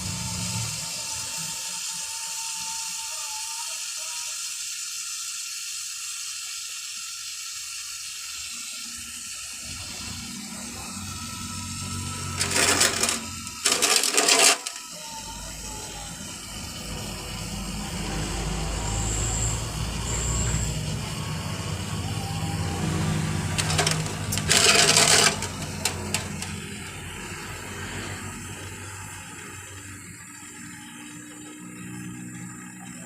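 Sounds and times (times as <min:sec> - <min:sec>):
gas torch flame hissing: 0:00.0 - 0:32.9
harsh noise bursts: 0:09.6 - 0:15.0, 0:16.1 - 0:30.1.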